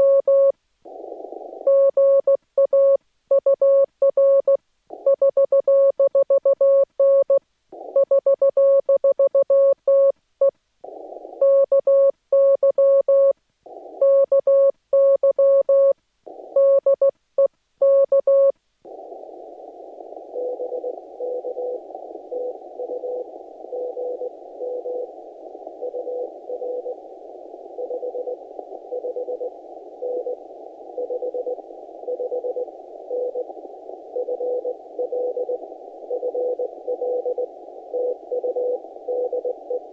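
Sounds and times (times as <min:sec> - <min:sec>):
weak morse signal: 0:00.0 - 0:10.1, 0:17.8 - 0:39.9
radio hiss: 0:00.8 - 0:01.9, 0:07.7 - 0:08.0, 0:10.8 - 0:11.6, 0:13.6 - 0:14.2, 0:16.2 - 0:16.7, 0:18.8 - 0:39.9
morse code beeps: 0:34.2 - 0:39.8.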